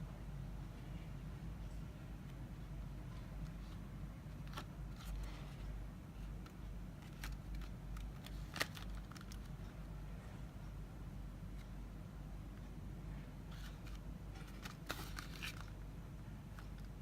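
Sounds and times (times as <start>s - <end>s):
steady low hum: 0.0s - 17.0s
wrapper crinkling: 13.6s - 15.8s.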